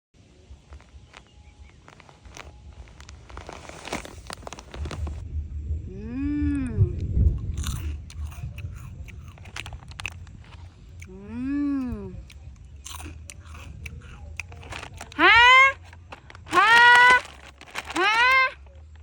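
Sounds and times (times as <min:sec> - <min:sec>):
crunching and clicking chewing: 0:00.6 - 0:05.2, 0:07.3 - 0:19.0
short voiced call: 0:16.5 - 0:18.7.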